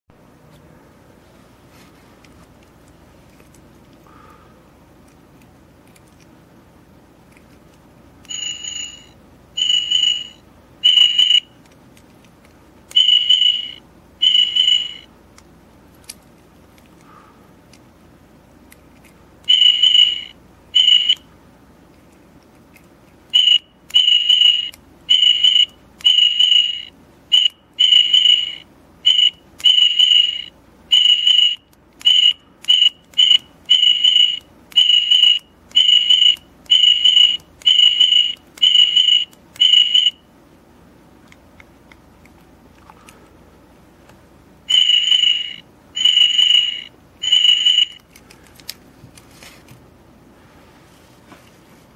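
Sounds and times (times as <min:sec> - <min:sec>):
high-pitched whistle-like beeps: 0:08.3 - 0:11.5, 0:12.9 - 0:15.1, 0:19.5 - 0:21.2, 0:23.4 - 0:40.2, 0:44.7 - 0:48.0.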